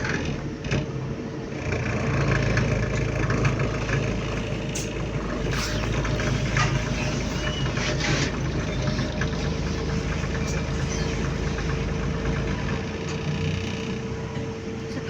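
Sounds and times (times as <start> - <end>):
bus diesel engine rumble: 0.0 - 15.0
bus panels rattling: 3.0 - 13.3.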